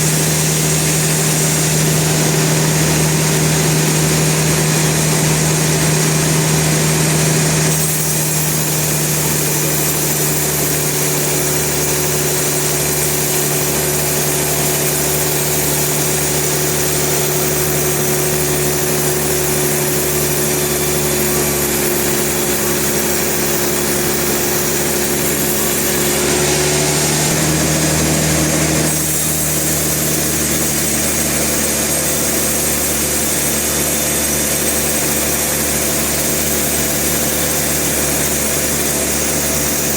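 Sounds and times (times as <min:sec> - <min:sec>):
sawmill engine and saw running: 0:00.0 - 0:39.9.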